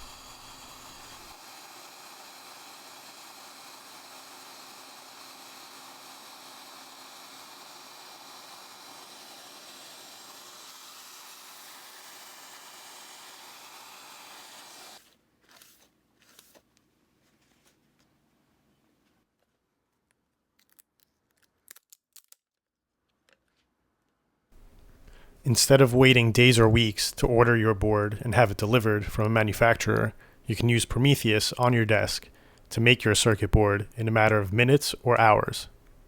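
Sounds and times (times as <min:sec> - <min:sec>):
spindle cutting with hissing whine: 0:00.0 - 0:15.0.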